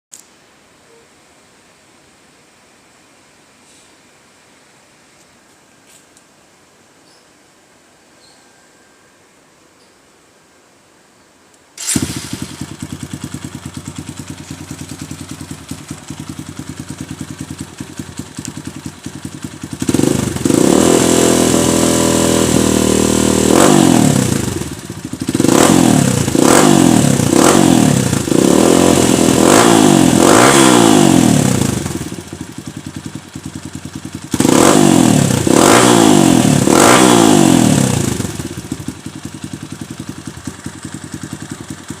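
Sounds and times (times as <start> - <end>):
motorcycle engine revving: 11.8 - 42.0.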